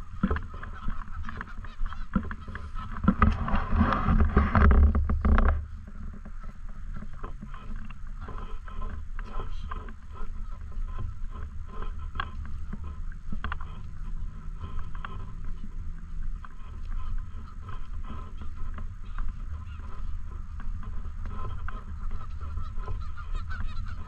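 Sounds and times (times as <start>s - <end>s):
wind rumble on microphone: 0.0s - 24.0s
faint irregular ticks: 4.4s - 24.0s.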